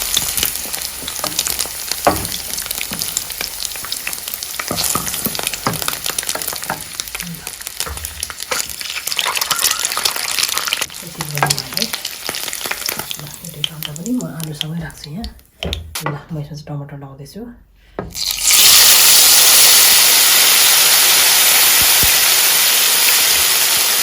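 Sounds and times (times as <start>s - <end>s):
utensil scraping and tapping pan: 0.0s - 10.1s, 11.2s - 13.4s
potatoes sizzling in hot oil: 0.0s - 15.2s, 18.1s - 24.0s.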